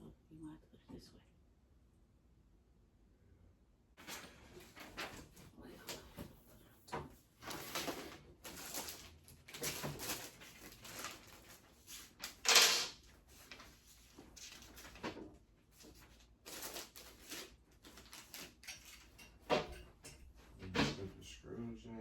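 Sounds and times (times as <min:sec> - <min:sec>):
furniture parts scraping and knocking: 0:04.0 - 0:21.2.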